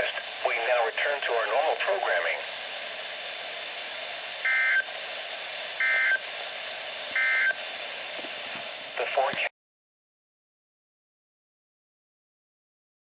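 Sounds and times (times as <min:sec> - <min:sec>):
radio hiss: 0:00.0 - 0:09.5
buzzy data bursts: 0:07.1 - 0:07.6.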